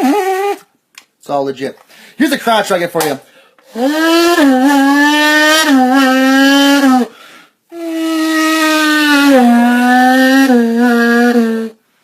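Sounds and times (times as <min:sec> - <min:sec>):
man imitating motorbike engine: 0:03.7 - 0:07.1, 0:07.7 - 0:11.8.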